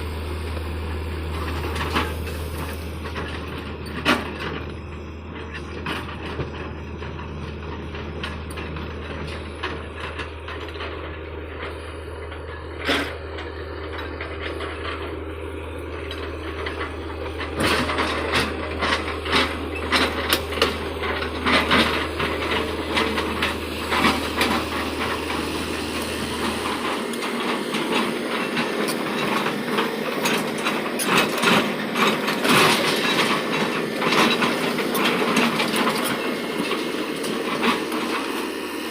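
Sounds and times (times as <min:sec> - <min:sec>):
excavator engine running: 0:00.0 - 0:38.9
metal clanking and rattling: 0:16.0 - 0:38.1.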